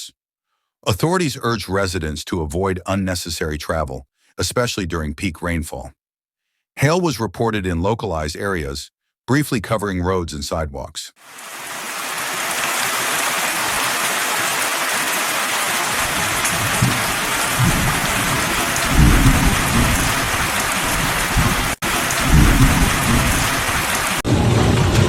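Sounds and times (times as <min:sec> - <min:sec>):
heavy rain pouring: 0:11.2 - 0:25.0
deep thunder rumbles: 0:15.9 - 0:25.0.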